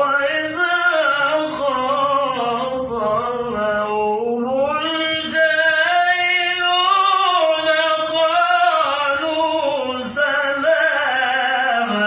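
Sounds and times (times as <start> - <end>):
man reciting melodically: 0.0 - 12.0.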